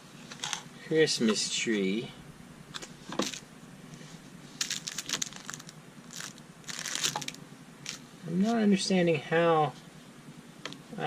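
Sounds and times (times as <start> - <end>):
crinkling rustles: 2.8 - 8.6.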